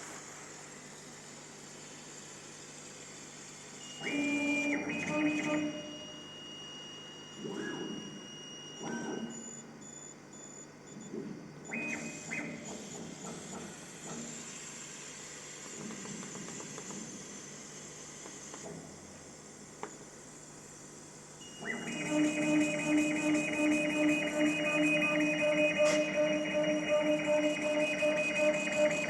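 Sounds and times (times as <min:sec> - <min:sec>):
fans humming: 0:21.4 - 0:29.0.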